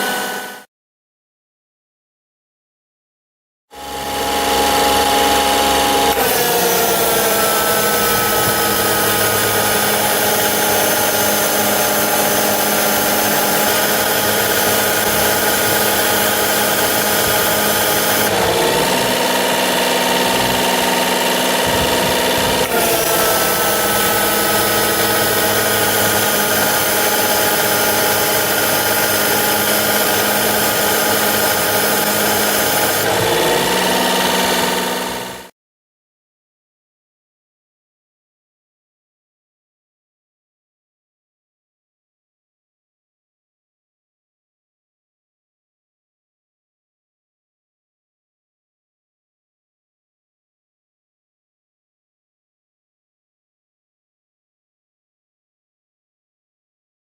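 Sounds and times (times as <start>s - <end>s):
air conditioning compressor whine: 3.8s - 35.5s
car engine running: 3.8s - 35.5s.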